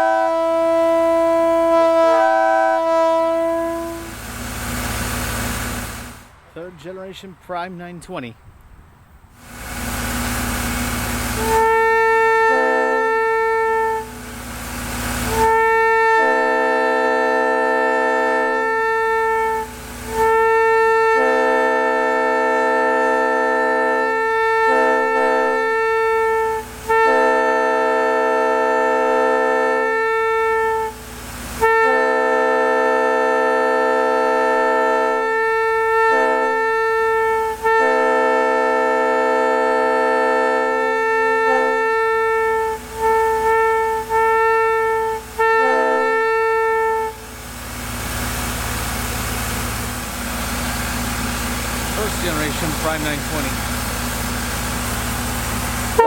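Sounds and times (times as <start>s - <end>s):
air horn blasts: 0.0s - 6.2s, 10.8s - 48.2s, 49.2s - 56.0s
rushing air: 4.0s - 6.8s, 8.4s - 11.6s.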